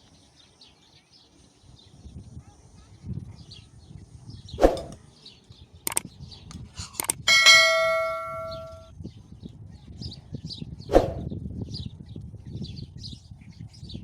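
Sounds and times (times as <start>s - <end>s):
birds chirping faintly: 0.0s - 9.2s
sharp clicks: 5.9s - 6.1s, 7.0s - 7.3s
metal object ringing when struck: 7.2s - 8.9s.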